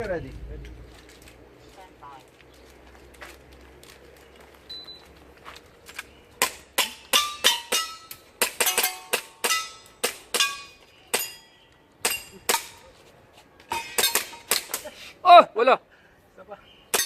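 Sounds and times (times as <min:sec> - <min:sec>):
pellets ringing on steel targets: 0:06.4 - 0:12.9, 0:13.7 - 0:14.8.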